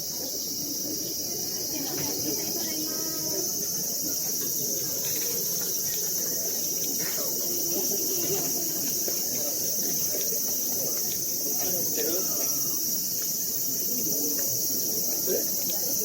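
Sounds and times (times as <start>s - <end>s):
cicadas droning: 0.0s - 16.0s
crowd murmur: 0.0s - 16.0s.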